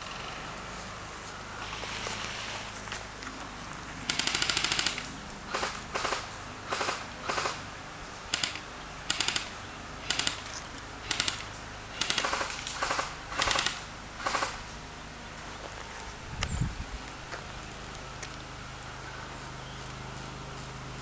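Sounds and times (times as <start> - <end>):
airsoft gun firing bursts: 1.6 - 2.7, 4.0 - 7.6, 8.3 - 14.6.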